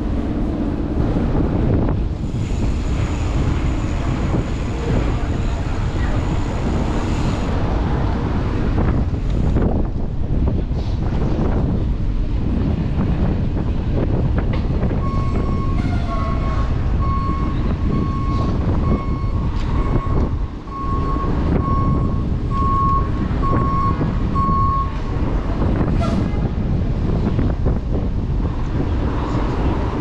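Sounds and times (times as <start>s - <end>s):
wind rumble on microphone: 0.0s - 30.0s
reversing alarm beeping: 15.0s - 25.1s.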